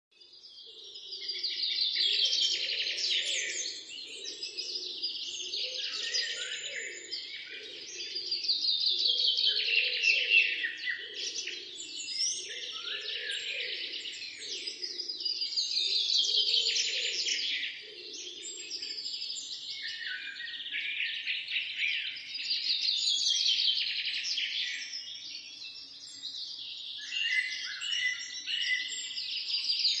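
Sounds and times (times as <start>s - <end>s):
bird chirps: 0.2s - 30.0s.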